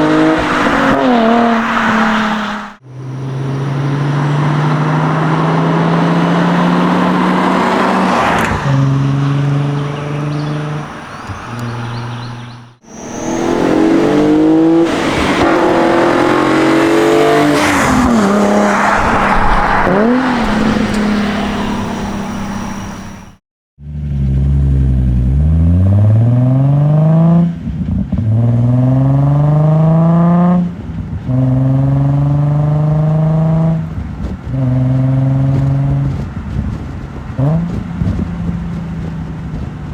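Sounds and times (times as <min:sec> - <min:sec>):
car engine revving: 0:00.0 - 0:27.5.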